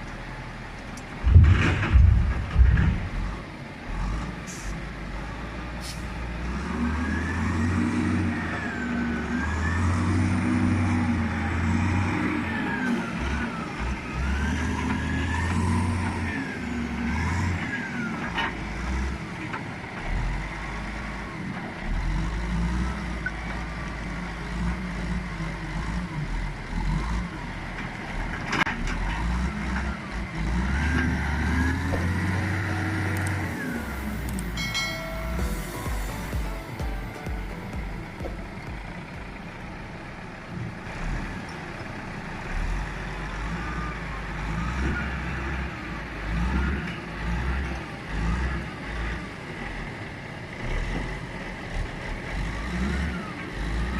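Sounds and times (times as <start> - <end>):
diesel engine revving: 0.0 - 53.9
machinery whine: 31.3 - 41.3.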